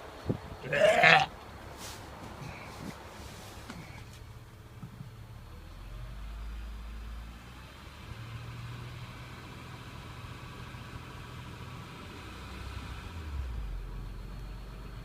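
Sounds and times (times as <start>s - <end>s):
car engine idling: 0.0s - 12.3s.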